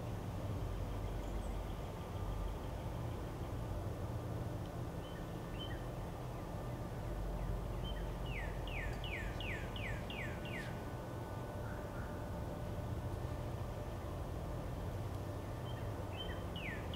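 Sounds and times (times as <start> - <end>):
songbird singing: 0.8 - 2.8, 5.0 - 10.8, 11.5 - 12.2, 15.2 - 16.9.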